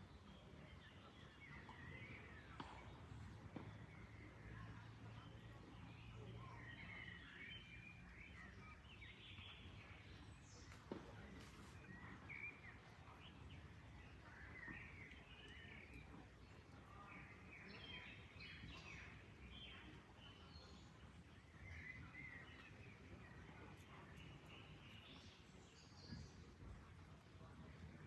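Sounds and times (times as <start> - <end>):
birds chirping: 0.0 - 26.7.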